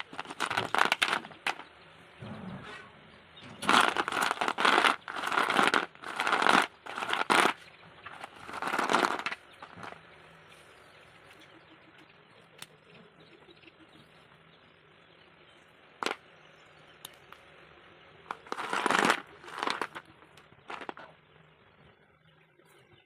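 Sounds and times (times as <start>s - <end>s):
gritty grinding scrapes: 0.0s - 10.0s, 18.3s - 21.1s.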